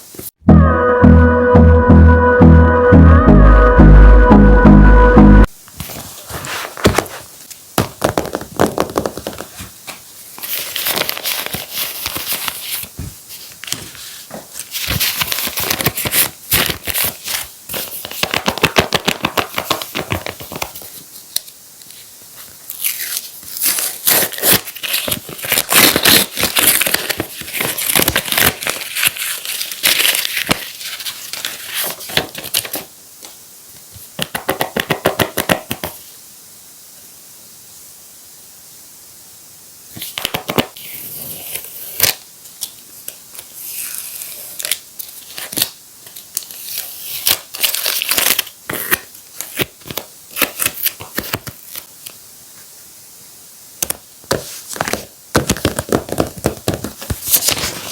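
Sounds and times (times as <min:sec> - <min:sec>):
paper crinkling and tearing: 0:08.2 - 0:32.9, 0:40.0 - 0:52.2, 0:56.8 - 0:57.9.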